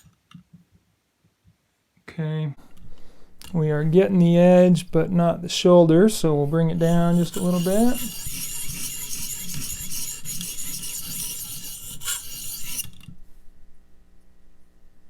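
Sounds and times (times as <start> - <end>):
sharpening stone rasping on knife edge: 6.8 - 13.0.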